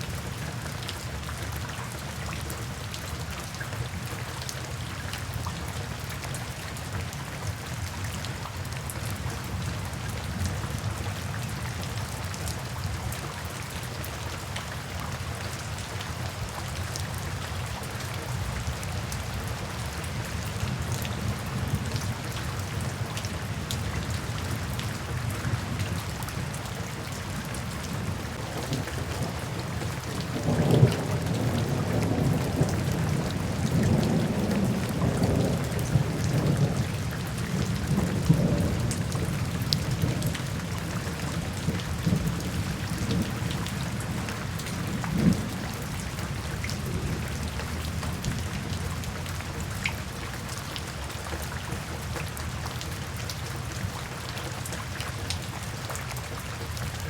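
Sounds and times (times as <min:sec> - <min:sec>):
gentle rain pattering: 0:00.0 - 0:57.0
rumble of thunder: 0:28.0 - 0:49.2.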